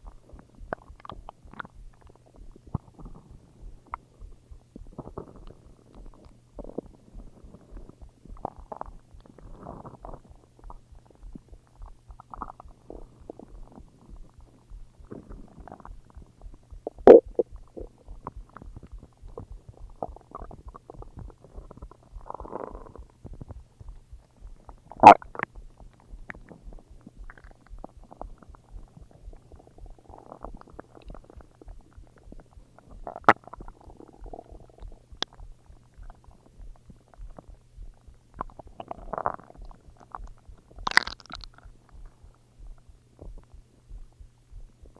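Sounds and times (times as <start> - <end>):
stomach growling and gurgling: 0.0 - 44.0
faint steady hum: 0.0 - 44.9.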